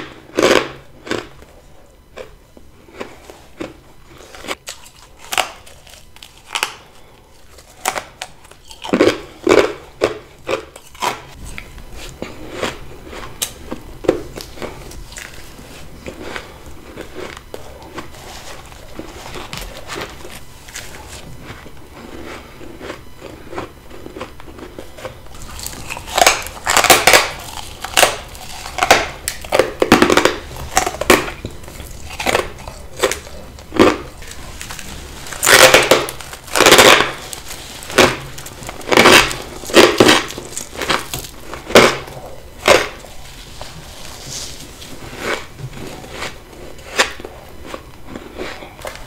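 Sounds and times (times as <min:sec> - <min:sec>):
crisp crunches of biting frost: 0:25.4 - 0:31.1, 0:31.7 - 0:45.5.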